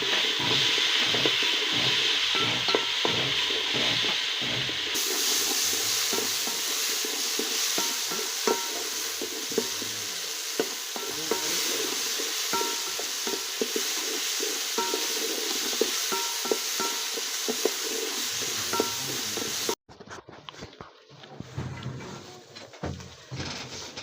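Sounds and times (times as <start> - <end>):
food sizzling in a pot: 0.0 - 19.8
metal spoon clinking against pot: 11.0 - 11.8.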